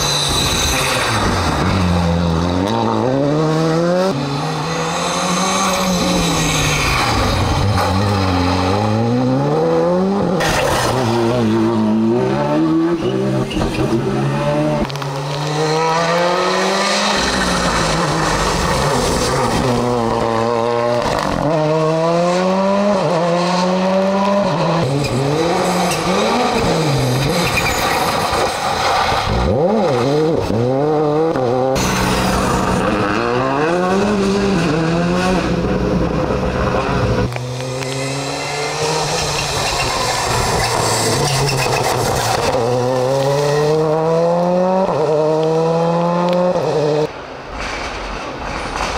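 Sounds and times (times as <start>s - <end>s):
rally car engines revving: 0.0s - 48.9s.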